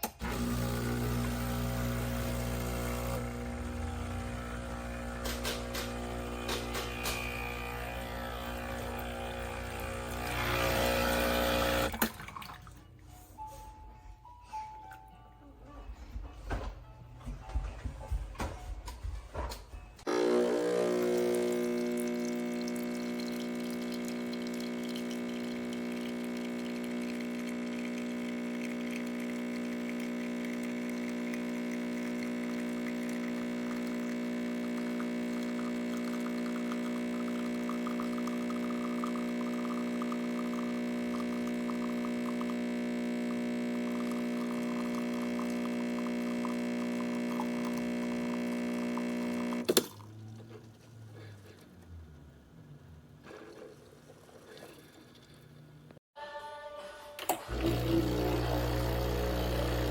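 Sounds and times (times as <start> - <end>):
espresso machine pump humming: 0.0 - 12.0, 20.1 - 50.0, 57.4 - 59.9
liquid trickling: 21.2 - 42.7.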